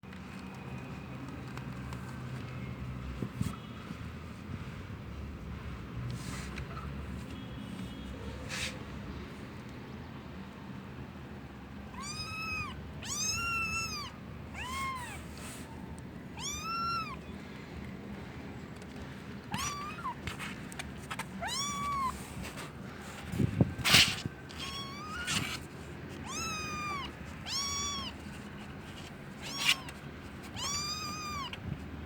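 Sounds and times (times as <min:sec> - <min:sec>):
kittens mewing: 0:11.9 - 0:17.4, 0:19.4 - 0:20.4, 0:21.3 - 0:22.5, 0:23.8 - 0:25.6, 0:26.2 - 0:28.2, 0:29.0 - 0:31.7.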